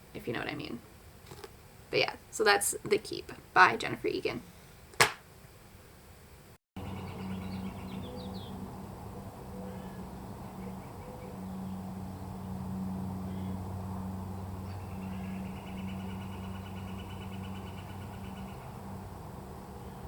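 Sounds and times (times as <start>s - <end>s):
small birds chirping: 6.8s - 8.7s, 9.5s - 12.6s, 14.3s - 18.8s
steady low hum: 6.8s - 20.0s.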